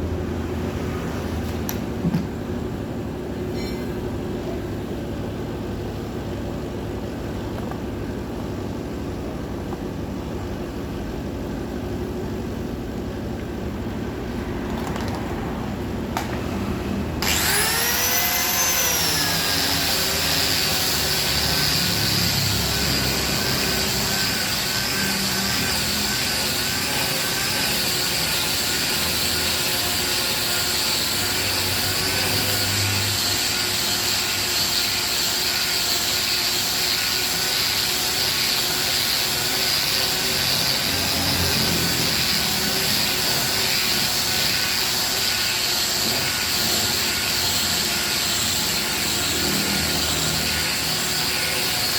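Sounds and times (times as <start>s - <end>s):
angle grinder sanding wood: 17.2s - 51.9s.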